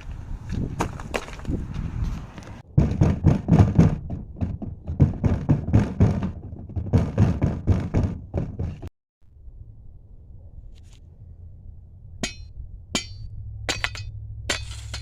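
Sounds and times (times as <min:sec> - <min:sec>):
heavy thuds and knocks: 0:02.7 - 0:08.9.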